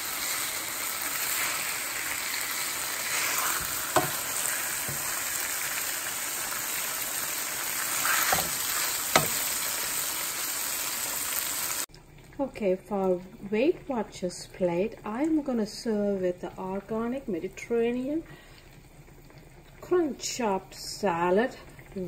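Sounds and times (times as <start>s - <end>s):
fish sizzling in a frying pan: 0.0s - 11.9s.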